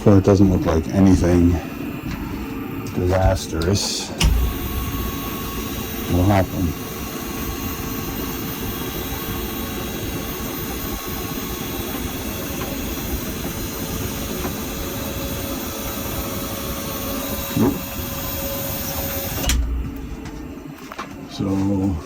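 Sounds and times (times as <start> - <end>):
electric motor humming with whine: 0.0 - 21.1.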